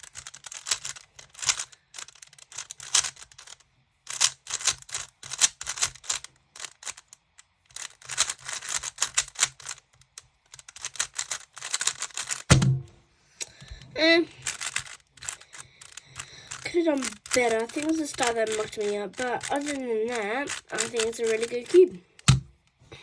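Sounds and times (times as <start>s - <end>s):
puzzle cube turning clicks: 0.0s - 12.5s, 13.4s - 22.8s
loud thump: 12.5s - 13.1s.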